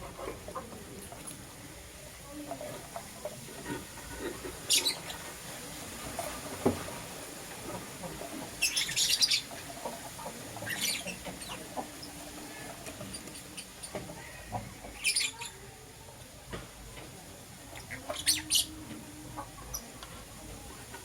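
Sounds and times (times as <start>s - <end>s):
lovebirds chirping: 4.7s - 5.2s, 8.6s - 9.5s, 10.6s - 15.6s, 17.8s - 18.8s.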